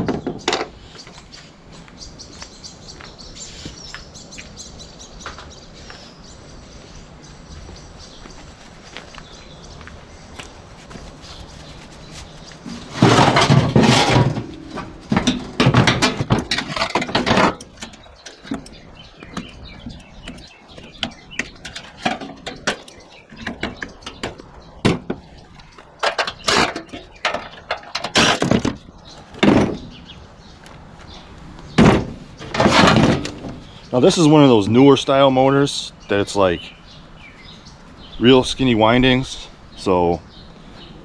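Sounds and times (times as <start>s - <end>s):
metal clanking and scraping: 11.8s - 30.0s, 31.7s - 33.7s.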